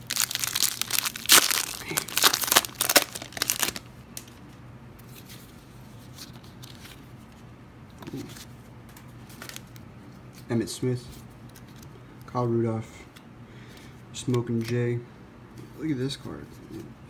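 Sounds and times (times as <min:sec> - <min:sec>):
plastic wrapper tearing and crinkling: 0:00.0 - 0:04.3.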